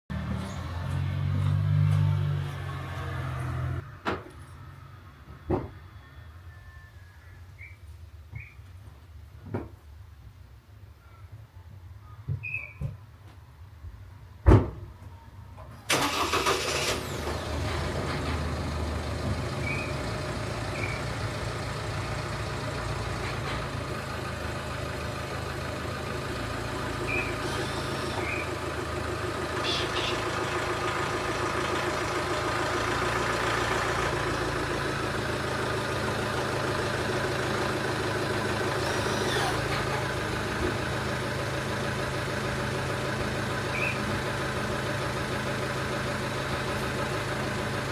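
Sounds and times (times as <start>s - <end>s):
vehicle engine starting and idling: 0.1s - 5.7s, 15.5s - 47.9s.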